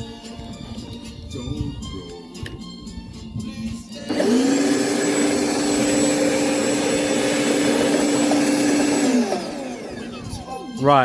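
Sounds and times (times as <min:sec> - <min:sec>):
lawnmower motor whine: 0:04.1 - 0:10.6.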